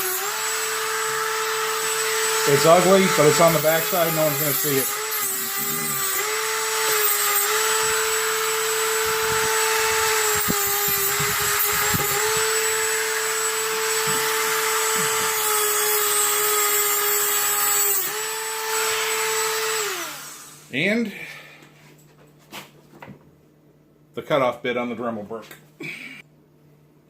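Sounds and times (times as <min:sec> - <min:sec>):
rotary tool cutting metal: 0:00.0 - 0:20.7.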